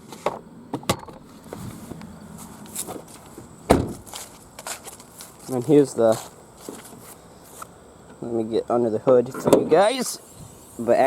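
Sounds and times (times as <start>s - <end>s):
loud thump: 3.7s - 4.1s.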